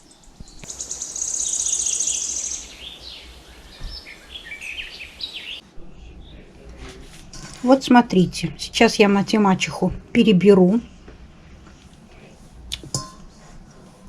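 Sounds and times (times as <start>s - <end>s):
songbirds singing: 0.0s - 6.5s.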